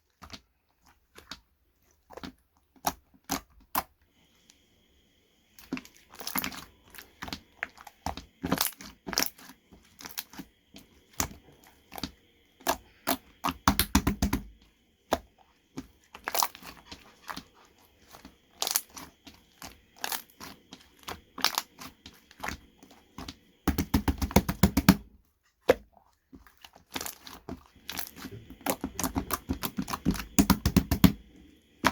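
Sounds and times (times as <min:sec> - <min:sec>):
sharp clicks and taps: 0:23.7 - 0:25.0, 0:28.7 - 0:31.2.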